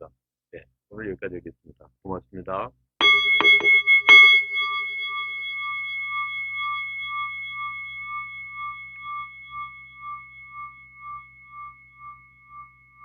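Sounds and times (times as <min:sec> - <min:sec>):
struck bell ringing: 0:03.0 - 0:13.0.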